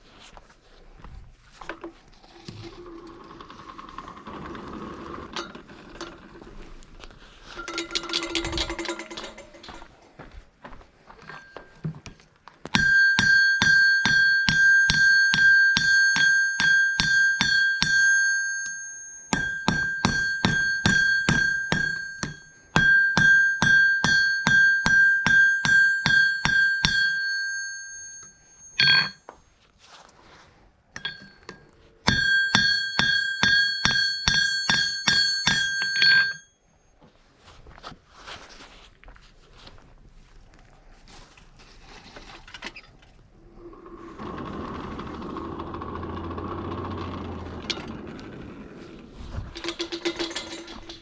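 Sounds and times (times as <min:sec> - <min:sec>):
hammer striking hot metal on anvil: 0:12.8 - 0:29.3, 0:31.0 - 0:36.4.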